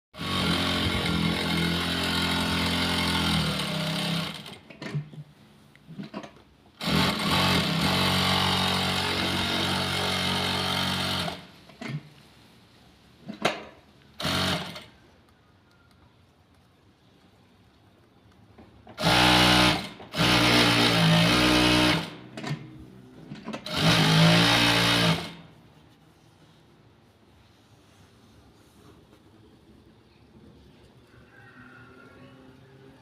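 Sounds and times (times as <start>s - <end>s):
sewing machine running: 0.2s - 4.6s, 6.8s - 11.4s, 14.2s - 14.9s, 19.0s - 22.2s, 23.6s - 25.4s.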